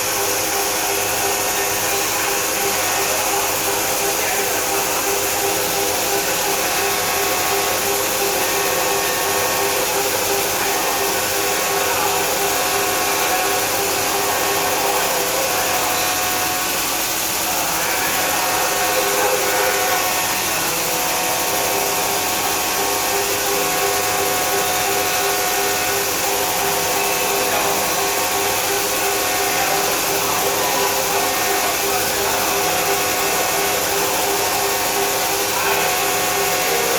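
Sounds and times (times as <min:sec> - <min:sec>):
machining center whining: 0:00.0 - 0:36.9.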